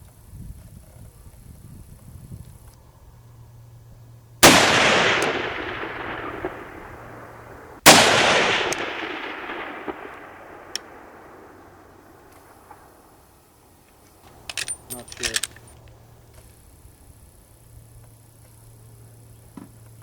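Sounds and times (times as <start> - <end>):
rifle shots with echo: 4.4 - 13.2.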